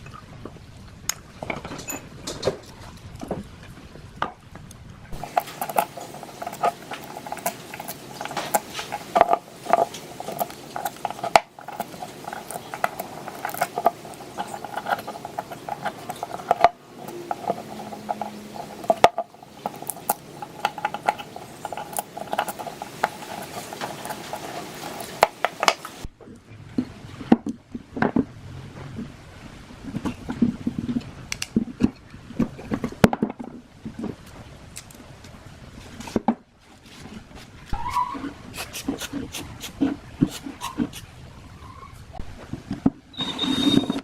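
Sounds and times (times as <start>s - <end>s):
steady mid-pitched hum: 2.8s - 27.2s
small metal parts clinking and scraping: 5.2s - 26.0s.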